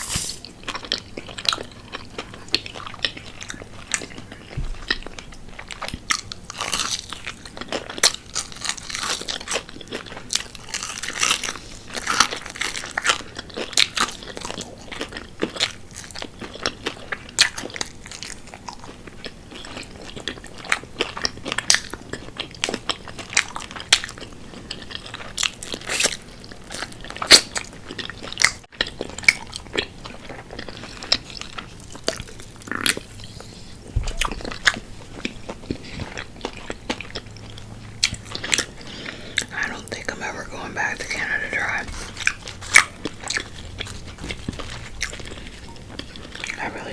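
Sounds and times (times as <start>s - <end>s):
crunching crispy chicken: 0.0s - 33.2s
wet chewing: 0.0s - 46.9s.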